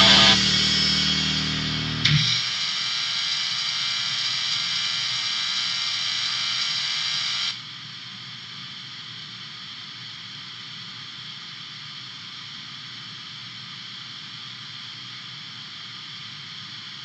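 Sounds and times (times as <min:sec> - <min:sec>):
distorted low drone: 0:00.0 - 0:02.5
static with high ringing tones: 0:00.0 - 0:17.0.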